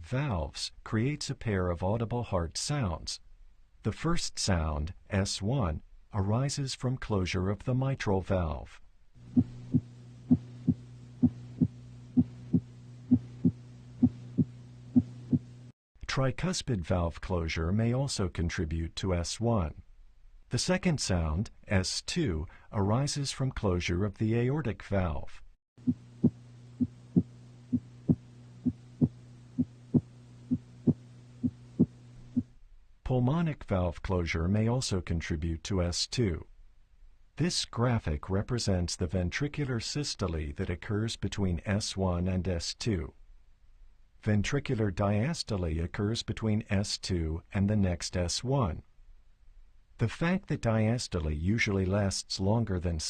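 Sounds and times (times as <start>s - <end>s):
steady low hum: 0.0s - 33.2s
low hum: 8.2s - 15.7s, 25.8s - 32.9s
heartbeat through stethoscope: 9.3s - 15.6s, 25.8s - 32.5s.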